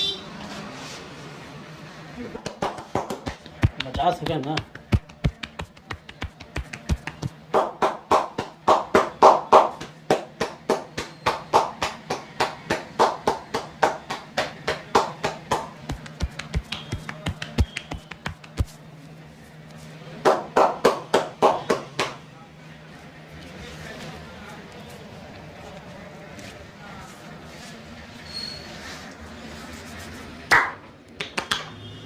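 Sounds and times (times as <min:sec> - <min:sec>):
rhythmic hand slaps: 0:02.4 - 0:18.8, 0:20.2 - 0:22.2, 0:30.5 - 0:31.7.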